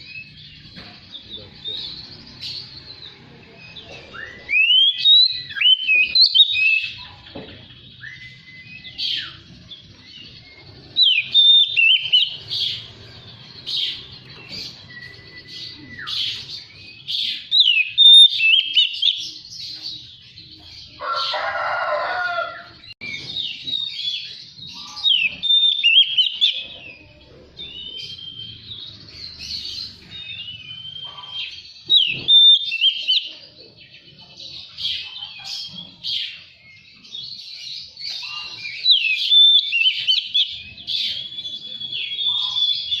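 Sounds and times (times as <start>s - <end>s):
bird singing whistled phrases: 4.1s - 7.1s, 7.9s - 12.5s, 14.6s - 19.3s, 24.2s - 26.7s, 27.6s - 29.1s, 29.9s - 33.4s, 38.2s - 43.0s.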